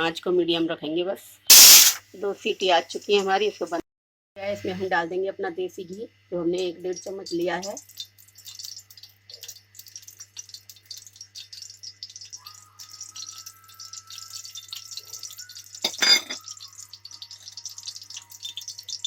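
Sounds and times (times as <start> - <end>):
brief loud noise: 1.5 - 2.0
ghee crackling in a pan: 6.5 - 19.0.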